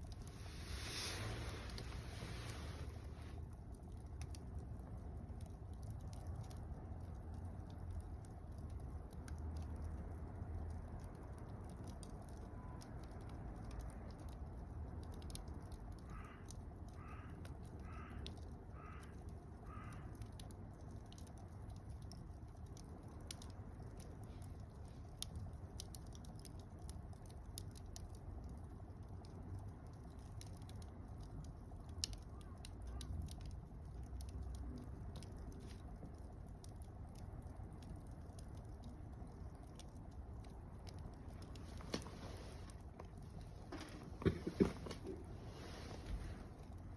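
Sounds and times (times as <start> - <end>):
low rumble of burning: 0.0 - 46.9
wood fire crackling and popping: 0.0 - 46.9
crow cawing: 16.0 - 20.2.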